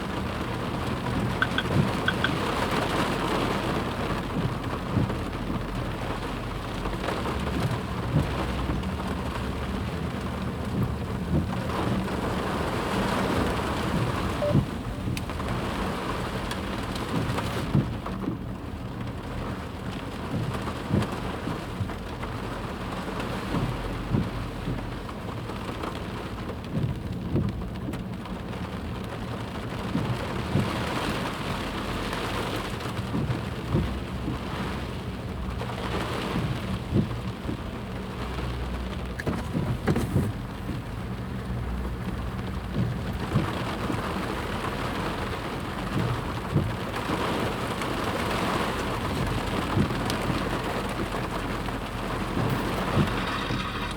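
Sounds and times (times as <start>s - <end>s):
sharp knocks and splashes: 1.3s - 2.7s
torrent of water rushing: 41.4s - 53.9s.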